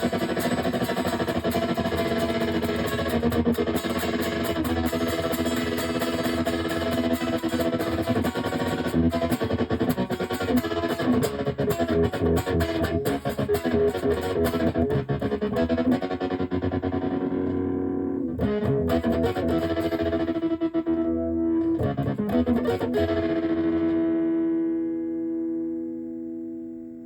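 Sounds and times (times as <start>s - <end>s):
distorted electric guitar: 0.0s - 27.0s.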